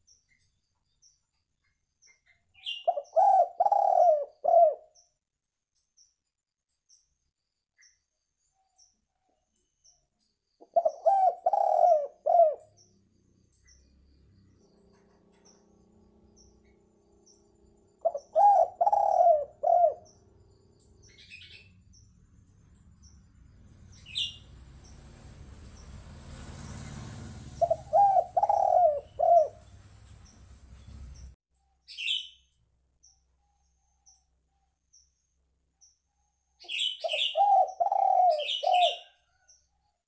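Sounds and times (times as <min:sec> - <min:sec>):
dove cooing: 0:02.7 - 0:05.0, 0:10.6 - 0:12.8, 0:18.0 - 0:20.2, 0:27.3 - 0:30.0, 0:36.7 - 0:39.4.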